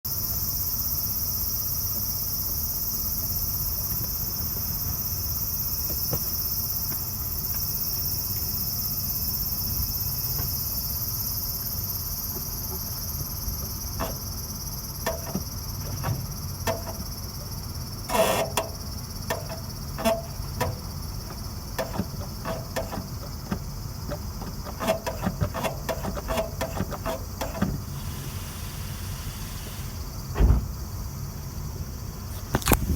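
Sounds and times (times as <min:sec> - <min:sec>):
insects chirping: 0:00.1 - 0:32.9
clutch mechanism squeaking: 0:12.8 - 0:28.1.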